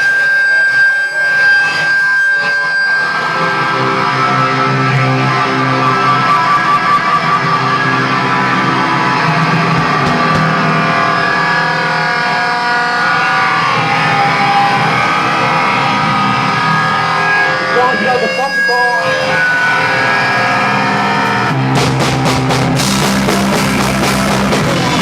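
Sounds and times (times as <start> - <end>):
high ringing tone: 0.0 - 8.5, 11.2 - 21.7
rock band playing loud: 0.0 - 25.0.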